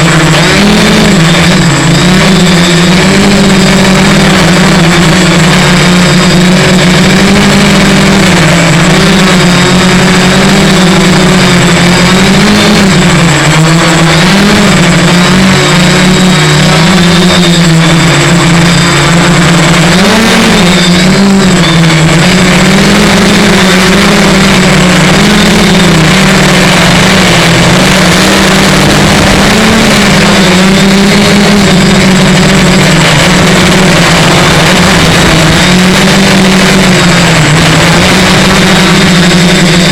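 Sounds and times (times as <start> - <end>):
drone motors and propellers humming: 0.0 - 39.9.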